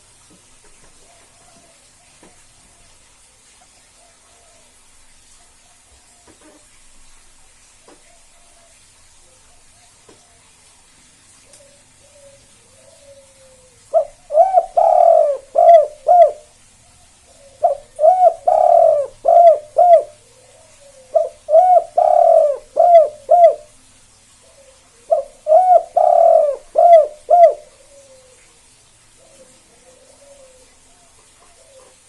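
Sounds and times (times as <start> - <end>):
dove cooing: 11.5 - 23.8, 24.4 - 28.5, 29.2 - 32.0.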